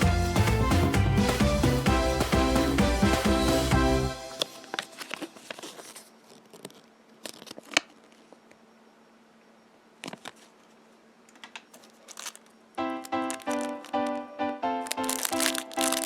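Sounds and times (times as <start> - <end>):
background music: 0.0 - 5.2, 12.8 - 16.0
hands handling small plastic toys: 4.4 - 8.4, 11.3 - 14.2, 14.8 - 16.0.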